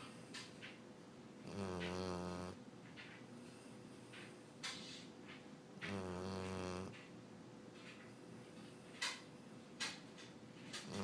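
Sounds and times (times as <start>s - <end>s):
dog breathing faintly: 5.8s - 7.2s, 10.6s - 11.0s.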